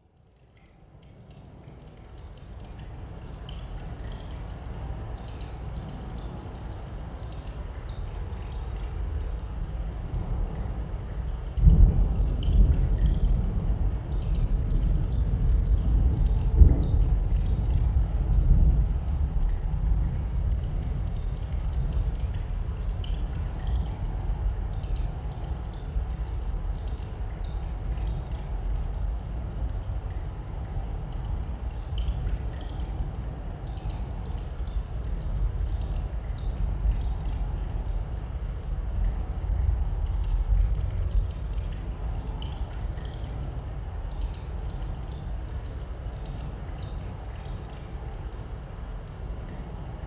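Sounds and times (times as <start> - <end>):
water drops dripping in cave: 0.0 - 50.0
low rumbling ambience: 5.9 - 50.0.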